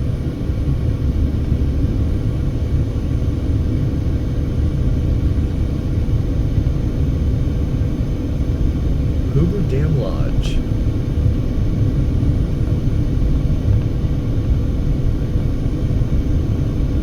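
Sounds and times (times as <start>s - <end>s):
faint steady hum: 9.1s - 10.8s.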